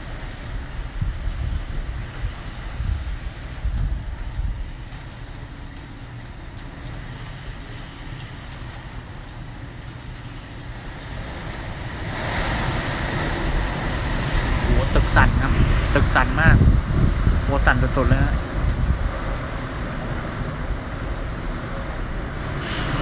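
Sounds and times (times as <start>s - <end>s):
wind rumbling over roof: 0.0s - 23.0s.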